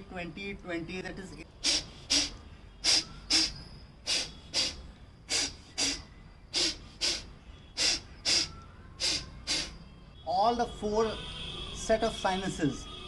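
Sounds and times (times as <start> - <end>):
forceful breaths through nose: 1.6 - 9.9.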